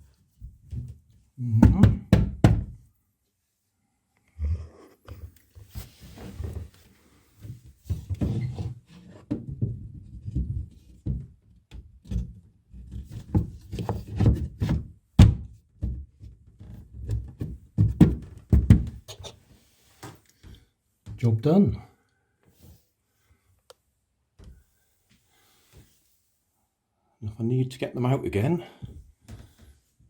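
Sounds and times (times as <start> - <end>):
bath panel knocks and thunks: 0.7 - 2.8, 13.1 - 16.1, 17.3 - 19.0.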